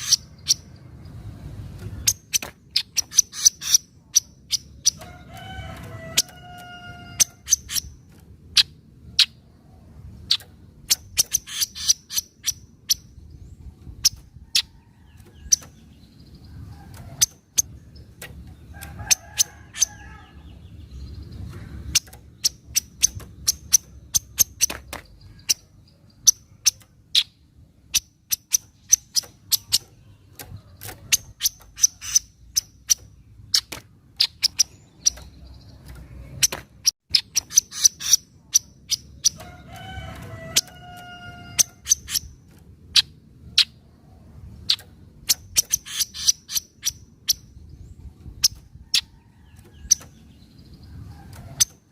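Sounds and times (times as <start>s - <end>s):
bird chattering calls: 0.0s - 0.7s, 2.0s - 5.1s, 6.0s - 9.4s, 10.2s - 13.2s, 21.4s - 39.5s, 40.5s - 43.8s, 44.6s - 47.5s.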